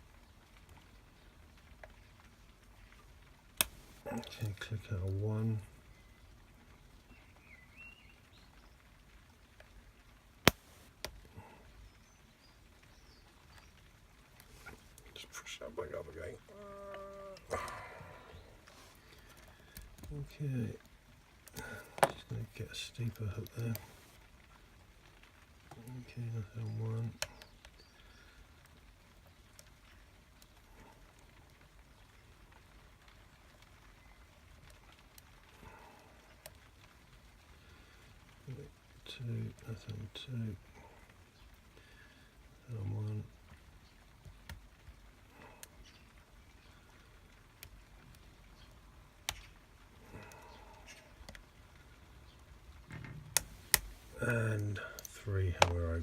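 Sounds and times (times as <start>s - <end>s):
faint bird chirps: 5.8s - 6.3s, 7.1s - 8.8s.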